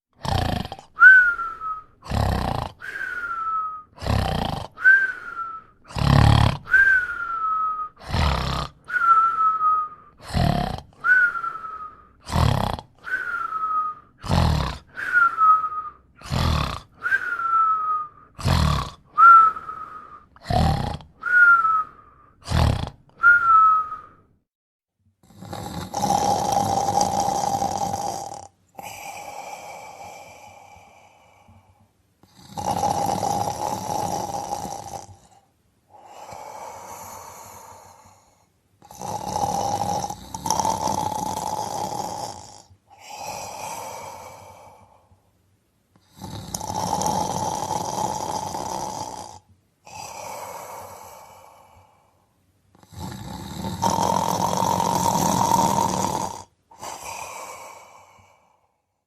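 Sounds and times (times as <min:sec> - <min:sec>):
person snoring: 0:00.1 - 0:24.2, 0:25.2 - 0:45.2, 0:45.9 - 0:59.0
whistling breath: 0:01.0 - 0:02.1, 0:02.8 - 0:04.1, 0:04.8 - 0:06.0, 0:06.6 - 0:08.2, 0:08.8 - 0:10.4, 0:11.0 - 0:12.3, 0:13.0 - 0:14.3, 0:14.9 - 0:16.4, 0:17.0 - 0:18.4, 0:19.1 - 0:20.5, 0:21.2 - 0:22.5, 0:23.2 - 0:24.3.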